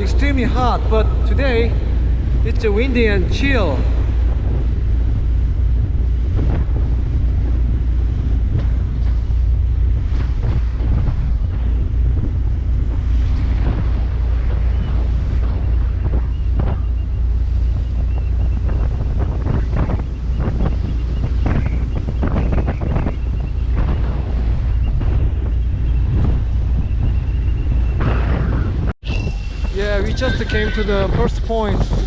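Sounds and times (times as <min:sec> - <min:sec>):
boat engine rumble: 0:00.0 - 0:32.0
wind buffeting microphone: 0:00.0 - 0:32.0.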